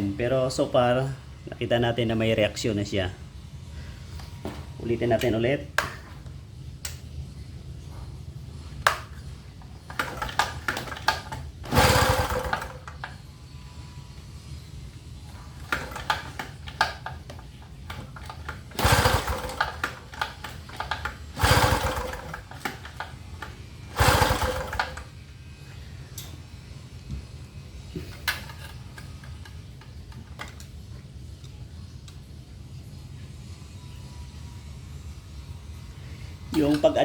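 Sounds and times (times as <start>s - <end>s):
small generator engine cranking: 8.8s - 13.3s, 15.3s - 25.2s, 28.0s - 30.6s.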